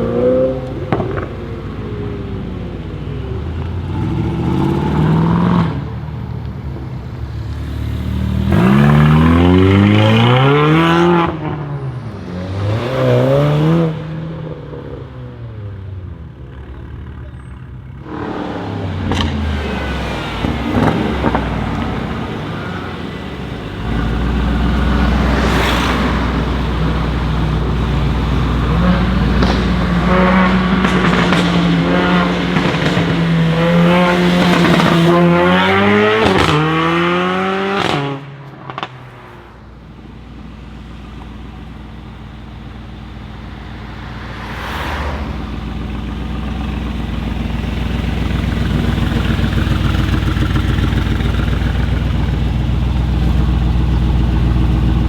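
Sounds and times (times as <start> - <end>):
car engine revving: 0.0 - 14.2, 18.0 - 55.0
exhaust cracks: 18.0 - 36.9, 37.7 - 55.0.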